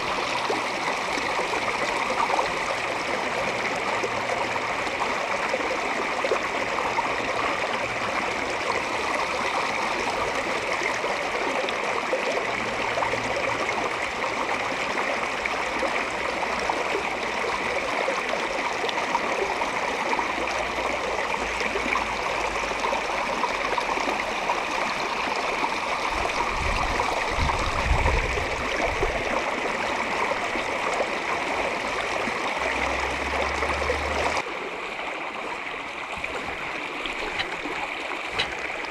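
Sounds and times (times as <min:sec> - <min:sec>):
stream rushing over rocks: 0:00.0 - 0:38.9.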